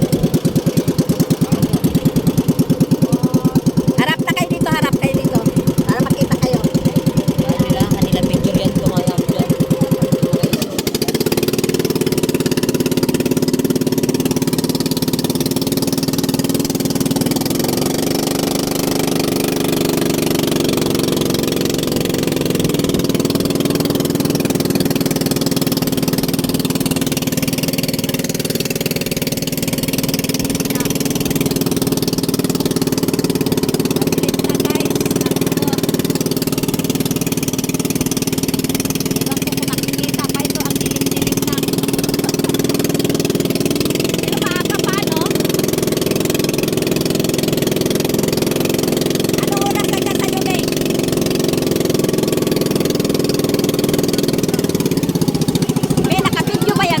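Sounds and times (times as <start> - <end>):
small engine running: 0.0 - 57.0.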